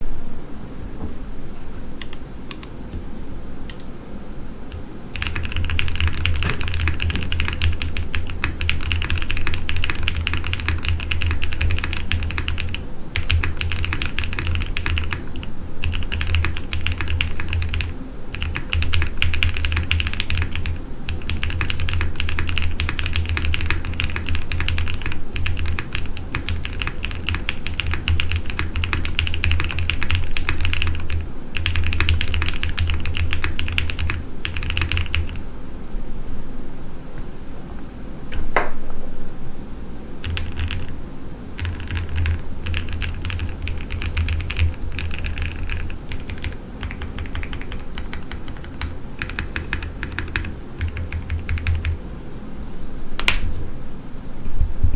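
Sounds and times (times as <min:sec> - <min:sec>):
mechanical keyboard typing: 0:05.2 - 0:35.4, 0:40.2 - 0:41.0, 0:41.6 - 0:52.0.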